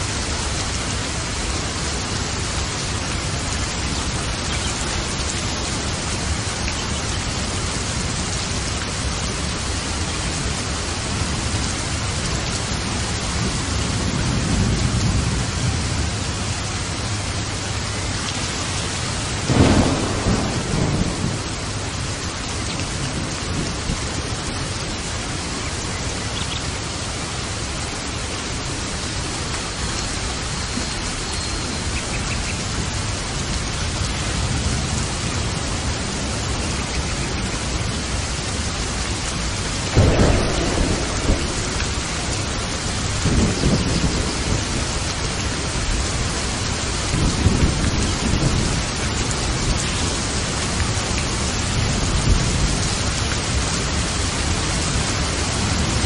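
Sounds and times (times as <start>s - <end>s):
rain hiss: 0.0s - 56.0s
thunder rumbling: 12.9s - 26.1s, 31.8s - 56.0s
thunderclap: 19.4s - 22.1s, 39.9s - 45.8s.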